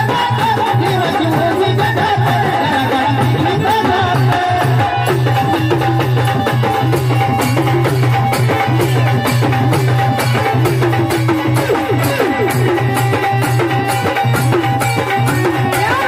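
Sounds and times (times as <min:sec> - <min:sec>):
steady drum beat: 0:00.0 - 0:16.0
wavering melody: 0:04.6 - 0:16.0.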